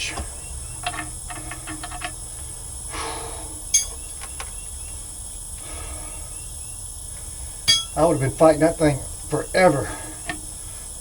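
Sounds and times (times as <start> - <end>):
insect chirring: 0.0 - 11.0
sharp ringing metal clink: 3.7 - 4.0, 7.7 - 8.0.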